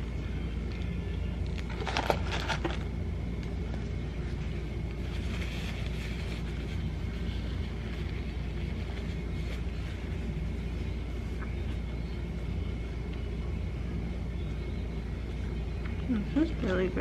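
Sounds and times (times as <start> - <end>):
steady low rumble: 0.0 - 17.0
crackling rustle: 1.5 - 11.9.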